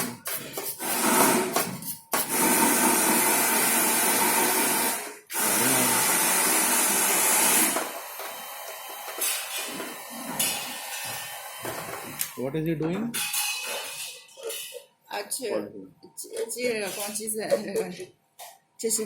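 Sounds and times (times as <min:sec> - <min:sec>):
workshop noise: 0:00.0 - 0:19.0
air gun hissing: 0:00.4 - 0:12.3.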